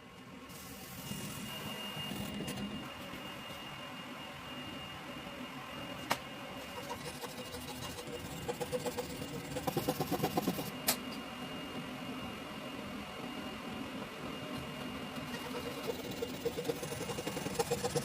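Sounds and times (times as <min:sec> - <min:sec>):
small electric motor whining: 0:00.5 - 0:03.7, 0:06.6 - 0:10.8, 0:15.1 - 0:18.0.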